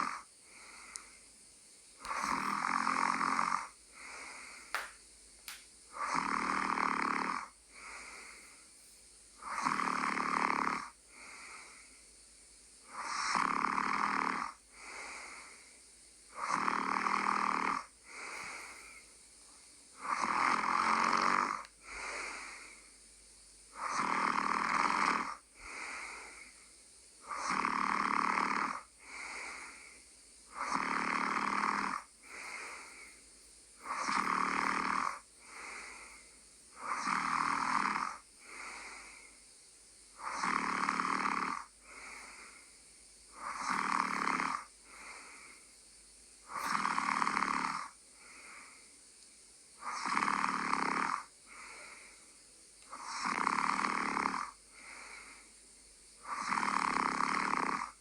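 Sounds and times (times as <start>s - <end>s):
person snoring: 0.0s - 1.1s, 2.0s - 4.9s, 5.9s - 8.6s, 9.4s - 12.0s, 12.8s - 15.7s, 16.3s - 19.1s, 20.0s - 22.9s, 23.7s - 26.6s, 27.2s - 33.2s, 33.8s - 39.4s, 40.1s - 42.7s, 43.3s - 45.6s, 46.5s - 48.8s, 49.8s - 52.2s, 52.8s - 55.5s, 56.2s - 58.0s.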